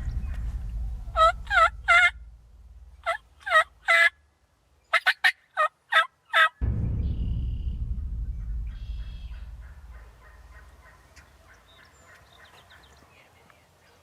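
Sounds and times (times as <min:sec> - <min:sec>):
wild turkey yelping: 0:01.2 - 0:02.1, 0:03.0 - 0:04.1, 0:04.9 - 0:06.6.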